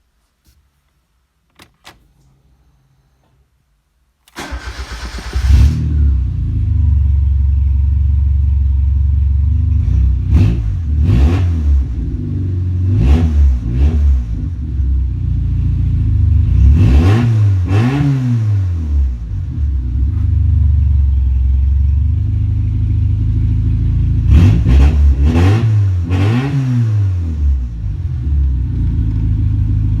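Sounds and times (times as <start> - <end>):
car engine starting and revving: 4.3 - 6.8, 9.6 - 15.2, 16.0 - 20.8, 24.1 - 30.0.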